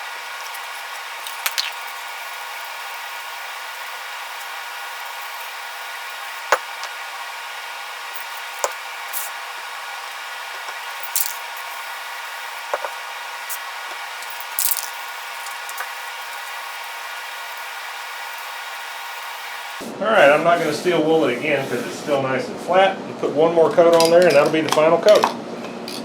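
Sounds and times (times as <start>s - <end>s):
steel wool scratching wood: 20.2s - 22.2s.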